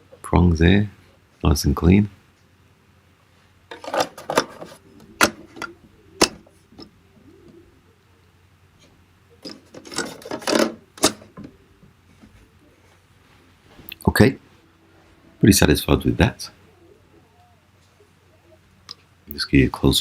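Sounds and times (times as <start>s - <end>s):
plastic parts rubbing and scraping: 3.7s - 6.9s, 8.8s - 11.5s.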